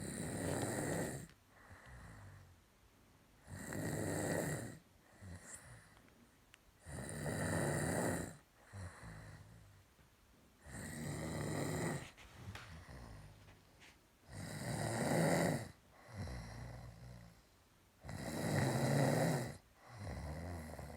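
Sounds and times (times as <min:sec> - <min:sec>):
loud rasping snores: 0:00.0 - 0:01.3, 0:03.4 - 0:05.8, 0:06.8 - 0:09.6, 0:10.6 - 0:13.4, 0:14.3 - 0:17.4, 0:18.0 - 0:20.9
quiet breaths: 0:00.0 - 0:20.9.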